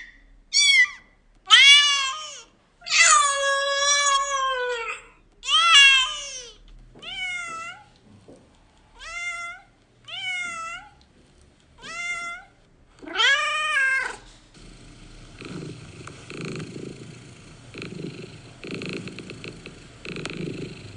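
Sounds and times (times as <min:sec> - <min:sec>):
cat meowing: 0:00.5 - 0:07.9, 0:09.0 - 0:11.0, 0:11.8 - 0:14.2
cat purring: 0:14.0 - 0:20.9.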